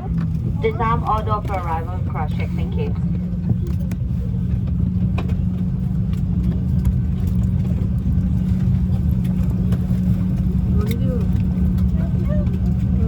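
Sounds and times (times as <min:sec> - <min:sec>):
faint voices of passengers: 0:00.0 - 0:04.7, 0:10.7 - 0:13.0
aircraft cabin drone: 0:00.0 - 0:13.0.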